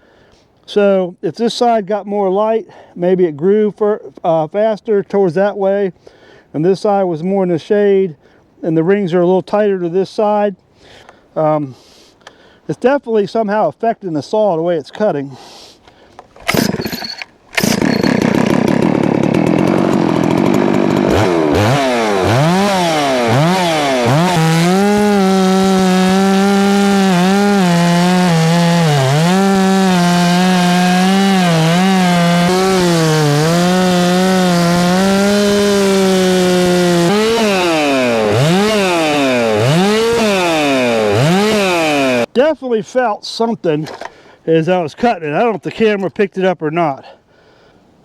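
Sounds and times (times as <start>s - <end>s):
chainsaw cutting a log: 16.4s - 42.3s.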